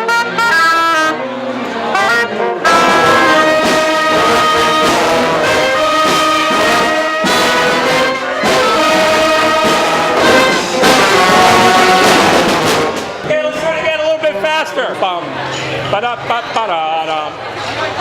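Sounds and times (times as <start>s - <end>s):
brass band playing funk: 0.0s - 14.4s
drums playing a funk groove: 2.7s - 13.4s.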